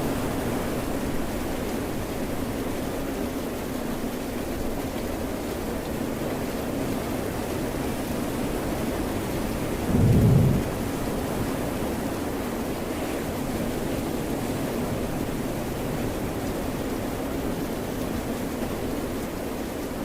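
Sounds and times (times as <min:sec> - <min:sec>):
steady rain: 0:00.0 - 0:20.0
ocean surf: 0:09.7 - 0:11.4
short deep boom: 0:09.9 - 0:10.8.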